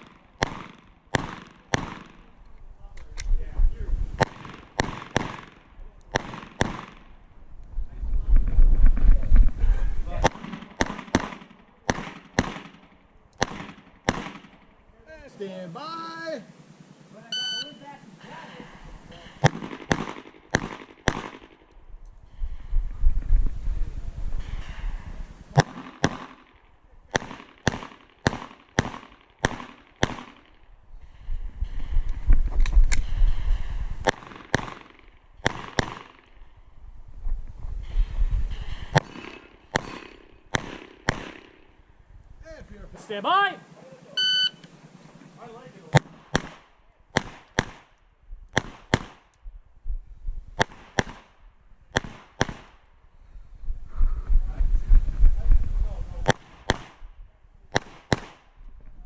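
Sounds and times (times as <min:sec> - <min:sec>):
pistol shots: 0:00.0 - 0:02.3, 0:04.2 - 0:07.2, 0:10.2 - 0:14.7, 0:19.2 - 0:21.7, 0:25.5 - 0:30.6, 0:34.0 - 0:36.4, 0:38.7 - 0:41.7, 0:45.9 - 0:49.3, 0:50.6 - 0:52.8, 0:56.2 - 0:57.0, 0:57.7 - 0:58.5.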